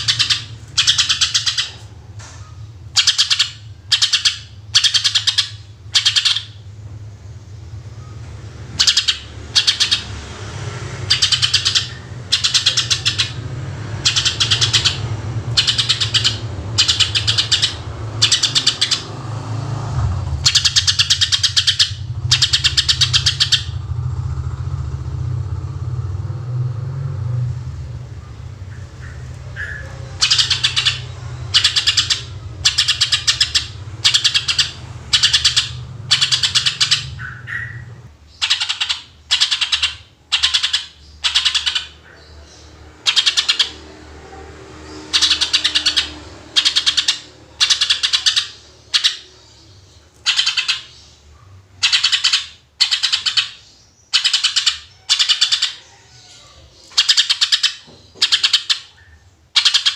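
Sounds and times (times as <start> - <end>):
bird singing high-pitched bursts: 0.0 - 1.8, 2.5 - 6.7, 7.5 - 19.6, 20.2 - 24.6, 28.2 - 59.9
low rumble: 19.0 - 31.5.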